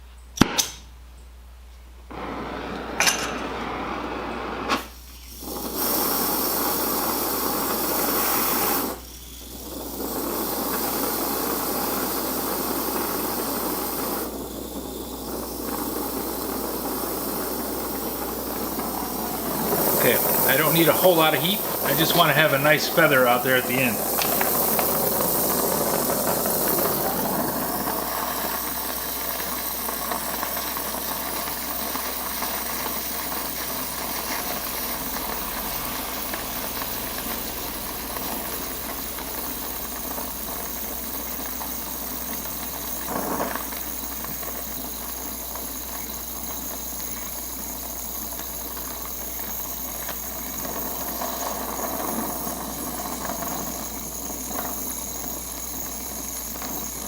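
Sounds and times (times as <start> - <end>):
torch flame hissing: 2.1 - 57.0.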